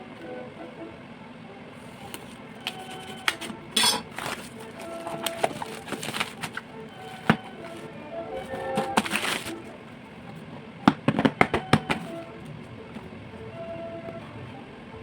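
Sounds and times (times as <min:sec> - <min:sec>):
packaging rustle: 0:01.9 - 0:09.8
packaging and parts clicking: 0:02.0 - 0:09.7.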